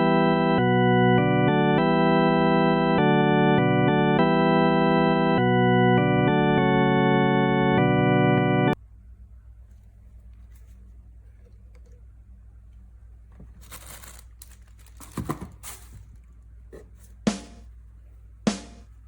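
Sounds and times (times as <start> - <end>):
electronic organ-like chords: 0.0 - 8.8, 17.3 - 17.6, 18.5 - 18.9
low steady hum: 4.8 - 19.0
crinkling and clicking: 13.3 - 16.4.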